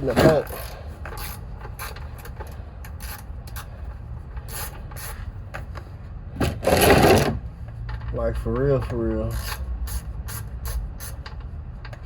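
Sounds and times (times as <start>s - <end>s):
ratchet wrench clicking: 0.5s - 3.7s, 8.5s - 12.0s.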